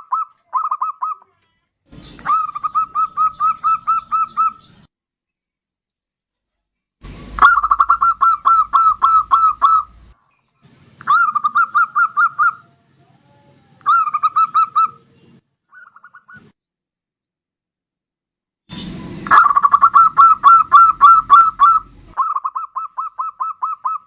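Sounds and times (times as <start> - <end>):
dove calling: 0.0 - 1.3, 1.9 - 4.9, 7.0 - 12.7, 13.8 - 16.5, 18.8 - 24.0.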